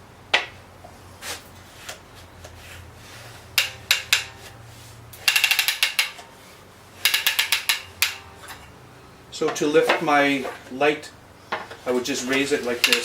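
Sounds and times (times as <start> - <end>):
wooden ratchet clicking: 3.6 - 4.5, 5.1 - 6.3, 7.0 - 8.7, 12.3 - 13.0.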